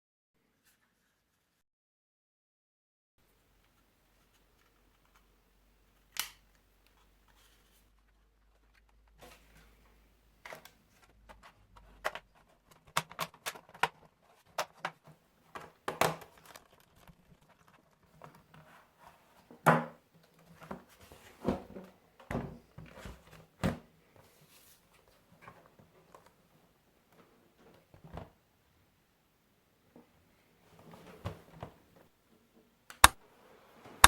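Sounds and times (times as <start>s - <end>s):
rustling: 3.6s - 19.5s.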